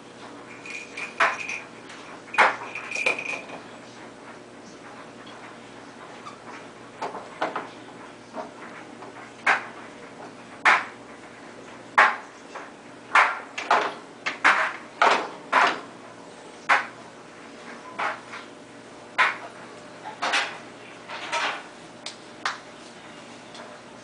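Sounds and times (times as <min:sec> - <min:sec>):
dishes and cutlery clinking: 0:00.5 - 0:03.7.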